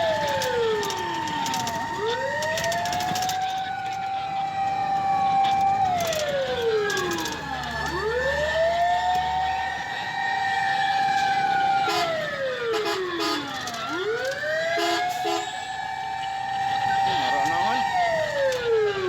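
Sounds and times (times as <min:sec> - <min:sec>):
fire truck siren wailing: 0:00.0 - 0:19.0
short siren blasts: 0:06.9 - 0:19.0.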